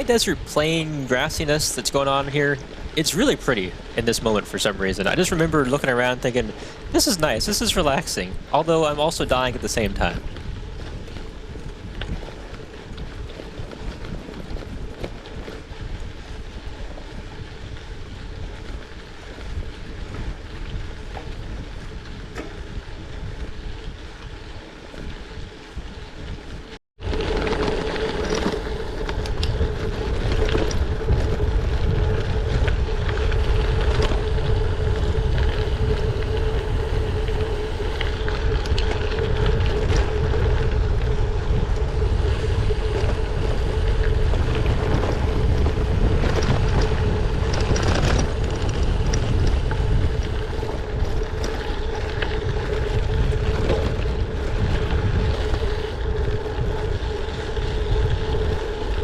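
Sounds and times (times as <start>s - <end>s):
steady mid-pitched hum: 0.0s - 14.0s, 27.0s - 59.0s
tyre and road noise: 0.0s - 59.0s
wind buffeting microphone: 0.0s - 59.0s.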